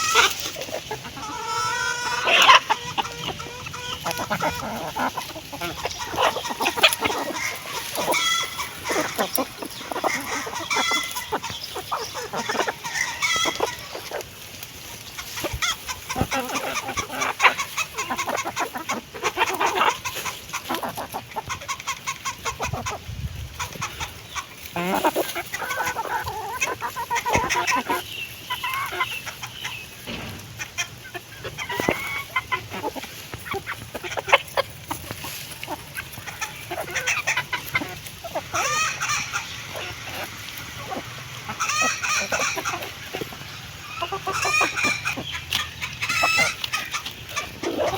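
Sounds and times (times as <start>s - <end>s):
hens clucking: 0.0s - 47.9s
beaks pecking: 0.1s - 23.0s.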